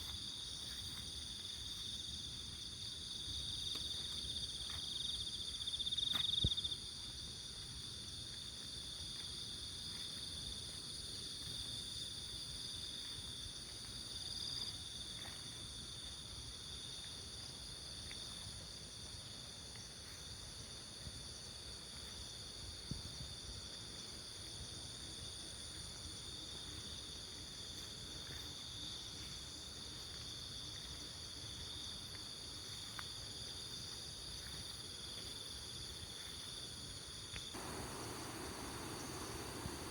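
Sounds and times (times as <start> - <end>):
crickets chirping: 0.0 - 39.9
low outdoor rumble: 37.6 - 39.9.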